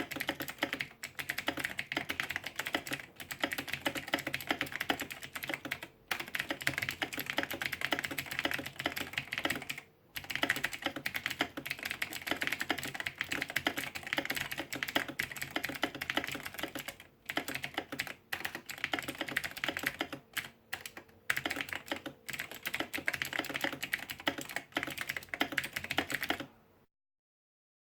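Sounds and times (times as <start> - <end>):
fast typing on keyboard: 0.0 - 26.6.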